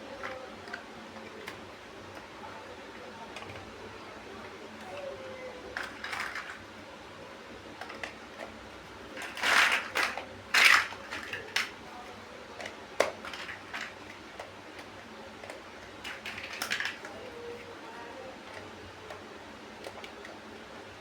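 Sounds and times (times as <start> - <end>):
plastic bricks clattering and clicking: 5.7 - 6.6, 9.1 - 11.8, 12.6 - 17.2.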